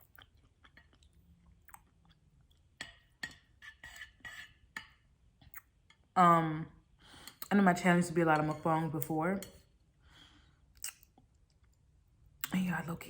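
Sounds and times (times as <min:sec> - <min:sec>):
wet chewing mouth sounds: 0:00.0 - 0:05.7.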